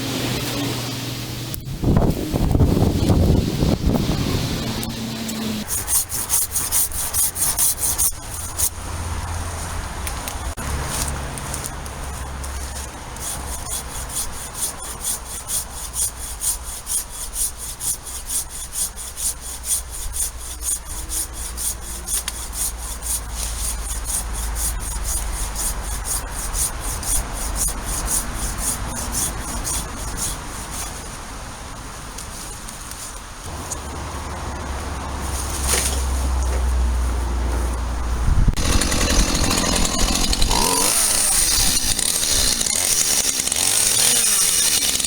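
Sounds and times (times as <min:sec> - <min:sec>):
steady low rumble: 0:00.0 - 0:05.7
hand tool rasping strokes: 0:03.8 - 0:08.8, 0:10.2 - 0:31.2, 0:38.5 - 0:45.0.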